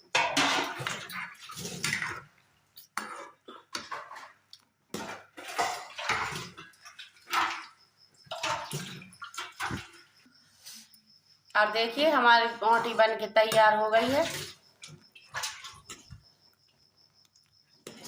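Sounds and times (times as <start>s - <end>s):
liquid sloshing: 0.2s - 10.2s, 12.6s - 16.3s.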